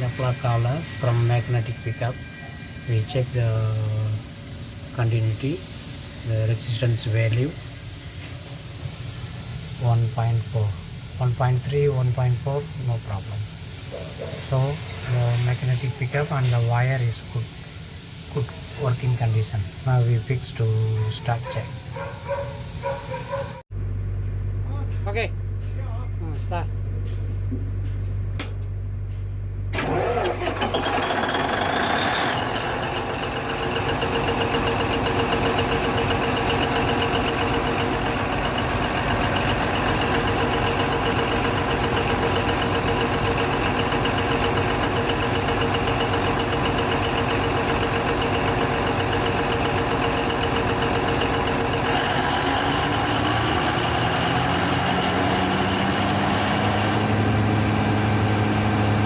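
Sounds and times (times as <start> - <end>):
diesel generator engine running: 0.0 - 59.0
starter motor whine: 29.7 - 59.0.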